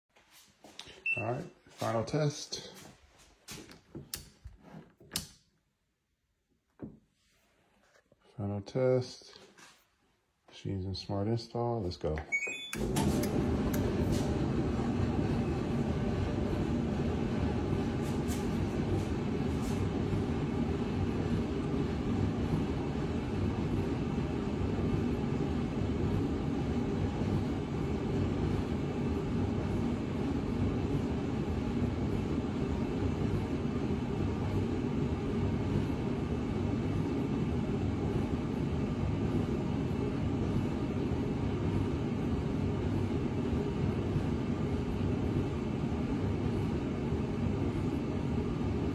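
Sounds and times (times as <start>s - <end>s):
machine low rumble: 12.7s - 48.9s.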